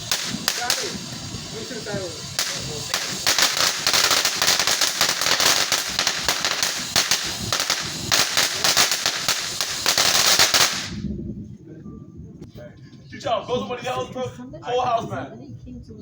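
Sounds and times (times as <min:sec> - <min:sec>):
firecrackers popping: 0:00.0 - 0:11.2.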